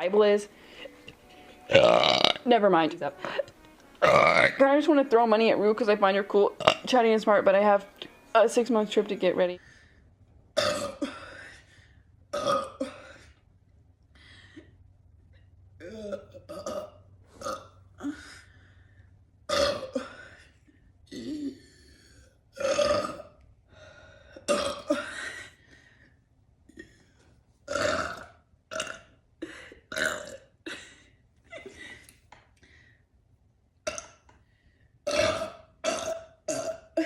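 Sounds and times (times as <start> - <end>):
woman burping: 1.0 - 2.4, 3.2 - 4.6, 6.5 - 6.9, 10.6 - 11.5, 12.3 - 13.3, 15.8 - 18.3, 19.5 - 20.4, 21.1 - 21.8, 22.6 - 23.4, 24.4 - 25.2, 27.7 - 31.0, 33.9 - 34.2, 35.1 - 37.0.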